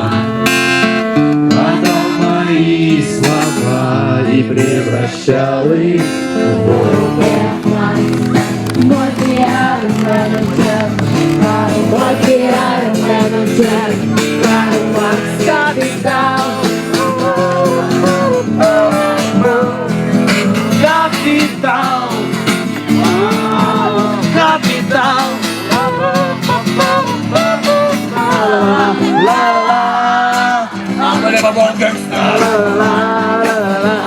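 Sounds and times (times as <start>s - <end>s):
acoustic guitar strummed: 0.0s - 34.0s
voices singing: 0.0s - 34.0s.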